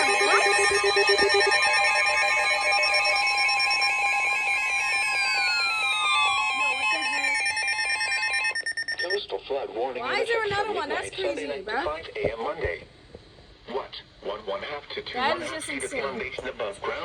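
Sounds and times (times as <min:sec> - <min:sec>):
steady warning alarm tone: 0:00.0 - 0:09.2
stuttering data bursts: 0:00.0 - 0:09.2
tones sliding down in pitch: 0:00.0 - 0:09.2.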